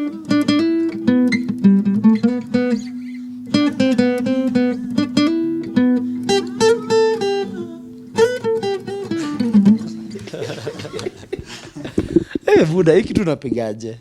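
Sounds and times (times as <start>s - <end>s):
acoustic guitar picking: 0.0s - 12.7s.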